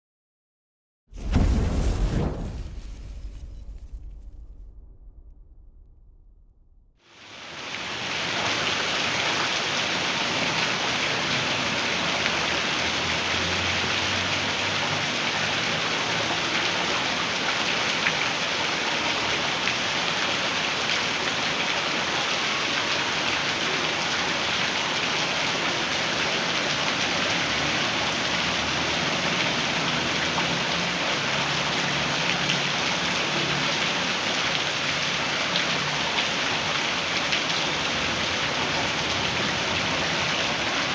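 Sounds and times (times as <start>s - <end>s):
faint low rumble: 1.2s - 7.0s
heavy rain pouring: 7.1s - 40.9s.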